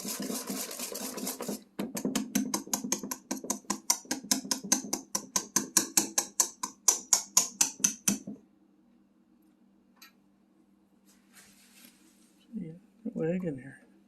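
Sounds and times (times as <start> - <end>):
whisk scraping batter in bowl: 0.0 - 5.6.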